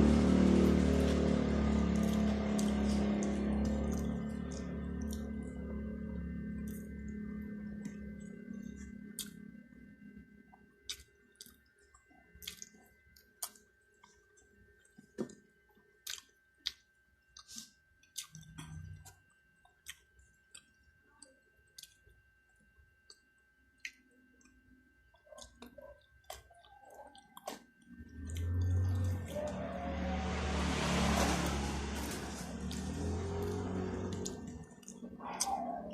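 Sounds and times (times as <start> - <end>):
road vehicle passing: 0.0 - 8.3, 28.1 - 35.9
chewing with wet mouth noises: 0.1 - 30.2, 32.6 - 35.9.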